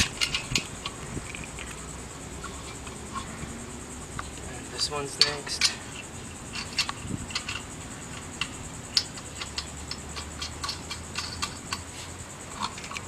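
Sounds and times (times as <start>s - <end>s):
lug nut clicking on stud: 5.2s - 11.8s.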